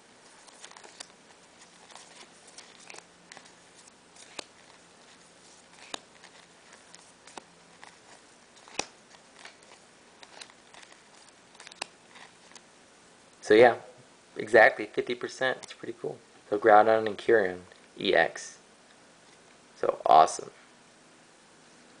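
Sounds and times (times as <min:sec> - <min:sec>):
trading cards clicking and snapping: 0:00.4 - 0:12.6.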